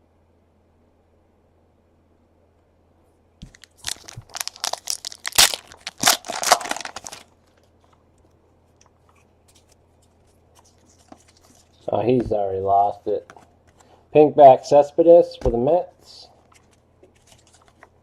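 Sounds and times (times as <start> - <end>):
wrapper tearing and crinkling: 3.4 - 7.3.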